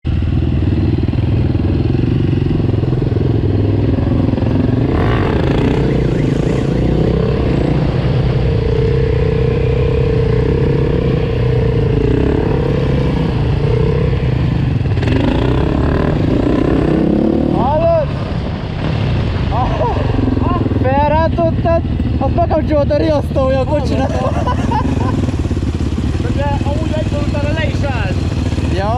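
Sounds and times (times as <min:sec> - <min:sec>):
motorcycle engine revving: 0:00.1 - 0:28.9.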